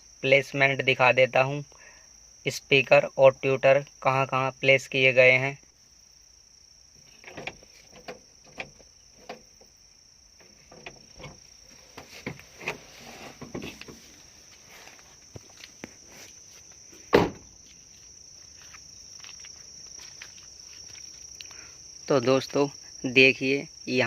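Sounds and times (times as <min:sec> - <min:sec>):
crickets trilling: 0:00.0 - 0:24.0
loud sharp thump: 0:17.1 - 0:17.5.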